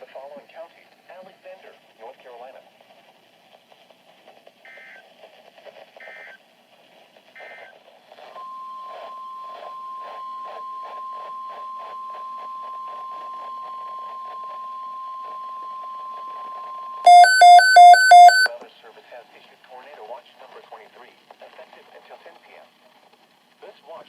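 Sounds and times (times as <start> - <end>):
steady warning alarm tone: 17.1 - 18.5.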